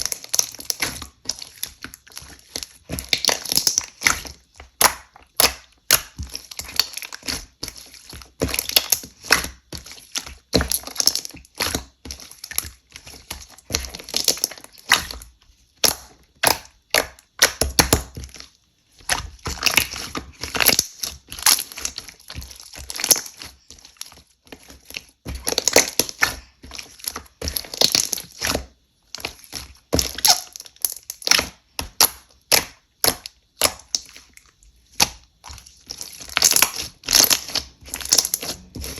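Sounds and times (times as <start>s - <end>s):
slime clicking and popping: 2.9s - 7.8s, 15.8s - 18.2s, 25.4s - 26.5s, 29.2s - 34.3s, 35.0s - 38.9s.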